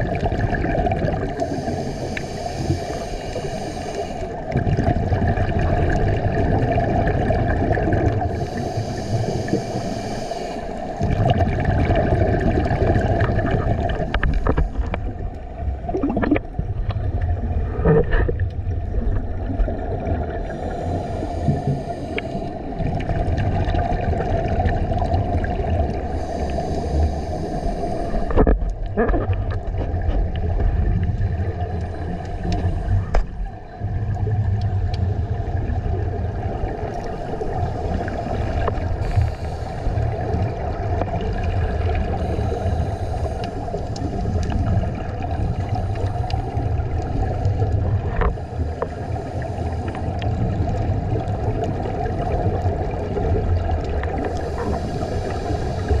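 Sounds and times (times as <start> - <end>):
bubbling gurgling exhales: 0.0 - 2.0, 4.4 - 9.9, 10.9 - 56.0
hissing regulator inhales: 1.3 - 4.6, 8.1 - 11.0, 20.3 - 22.8, 25.9 - 28.5, 31.8 - 33.5, 36.9 - 40.8, 41.9 - 50.5, 54.1 - 56.0.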